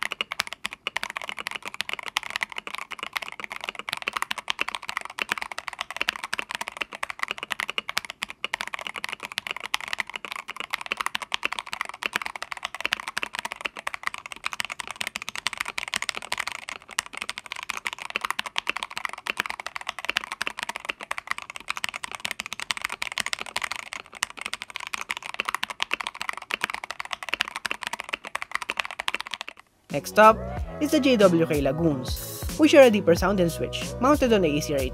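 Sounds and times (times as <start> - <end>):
fast mechanical keyboard typing: 0.0 - 30.0.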